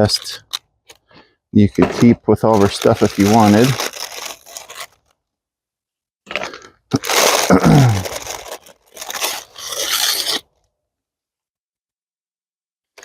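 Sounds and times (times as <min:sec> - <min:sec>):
toy packaging crunching and scraping: 0:01.7 - 0:05.2, 0:06.3 - 0:10.7.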